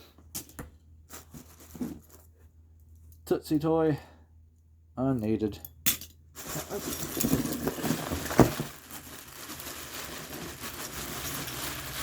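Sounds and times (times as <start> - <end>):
crinkling and rustling in box: 1.1 - 2.5, 6.4 - 12.0.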